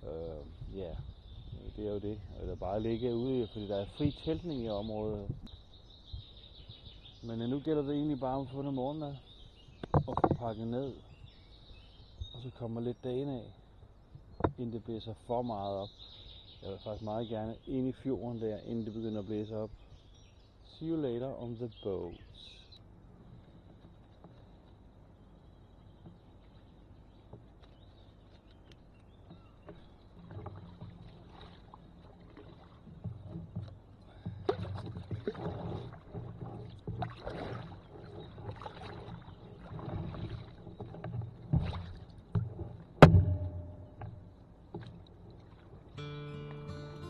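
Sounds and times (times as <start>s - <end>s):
paddle splashing in water: 23.2s - 46.6s
sharp knock: 43.0s - 44.2s.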